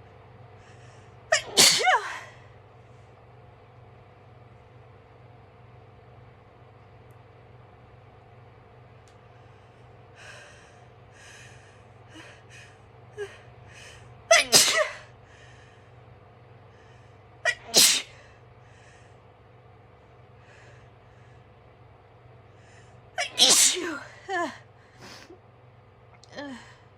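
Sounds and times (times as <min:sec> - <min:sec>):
person sneezing loudly: 0:01.3 - 0:02.3, 0:14.3 - 0:15.0, 0:17.5 - 0:18.2, 0:23.2 - 0:24.2.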